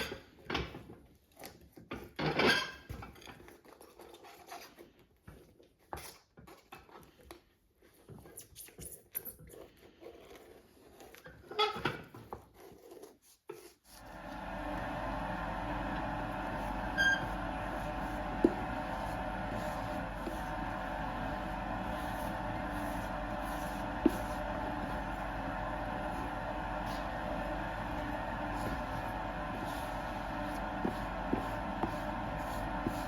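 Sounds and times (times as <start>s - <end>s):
electric motor humming: 14.1s - 33.0s.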